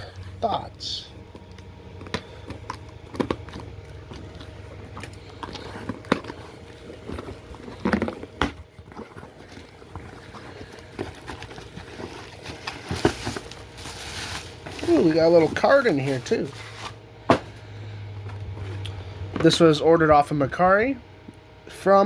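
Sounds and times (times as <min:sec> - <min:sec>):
packaging crinkling: 0:01.2 - 0:17.6.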